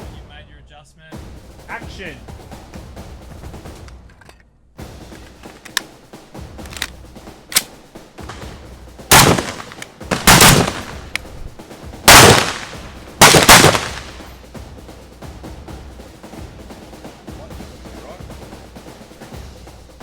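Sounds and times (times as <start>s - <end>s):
rifle shots echoing: 7.6s - 11.4s, 12.0s - 14.4s
fainter distant shots: 8.2s - 11.3s, 12.1s - 14.4s.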